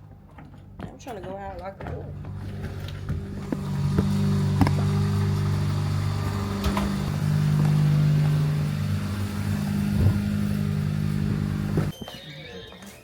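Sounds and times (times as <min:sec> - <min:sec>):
car engine humming: 0:02.1 - 0:11.9.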